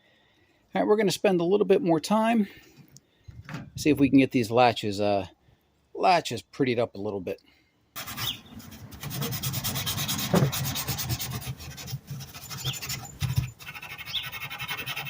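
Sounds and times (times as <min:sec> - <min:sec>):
brush scrubbing rusty metal: 0:08.0 - 0:15.0.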